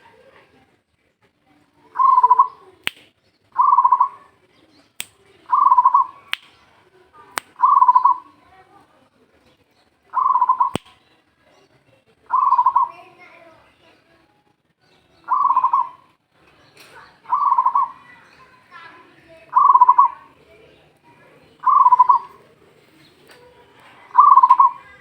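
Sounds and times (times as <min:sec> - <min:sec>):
sharp single clicks: 0:02.8 - 0:03.1, 0:06.3 - 0:06.6, 0:07.4 - 0:07.6, 0:10.7 - 0:11.0
dove cooing: 0:19.5 - 0:20.3, 0:21.6 - 0:22.5, 0:24.0 - 0:25.0.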